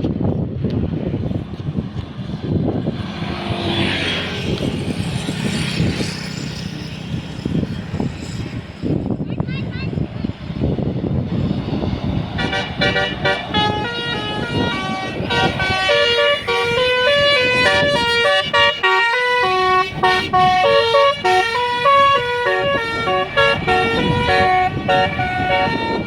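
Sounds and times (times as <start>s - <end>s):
low rumble of a bus: 0.0s - 26.0s
bus horn playing a tune: 12.4s - 26.0s.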